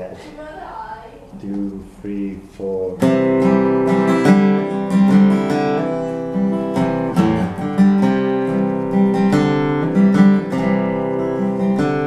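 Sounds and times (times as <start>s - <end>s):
guitar strumming slow chords: 2.9s - 12.0s.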